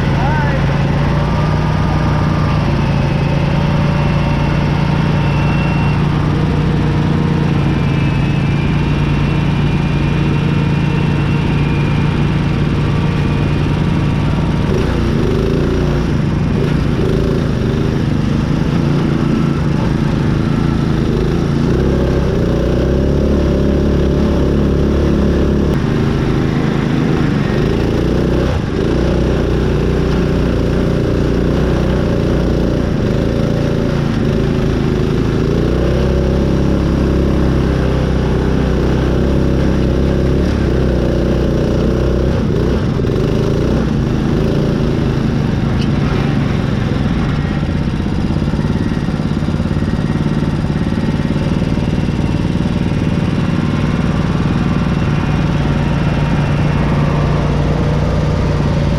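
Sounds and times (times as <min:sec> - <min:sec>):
riding mower engine running: 0:00.0 - 0:58.9.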